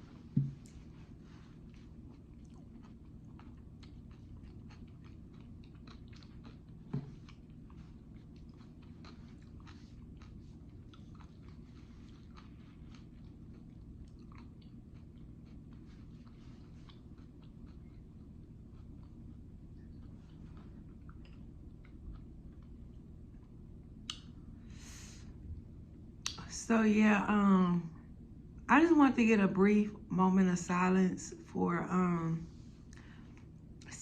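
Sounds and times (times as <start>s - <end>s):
chewing crunchy food: 0.1s - 24.4s.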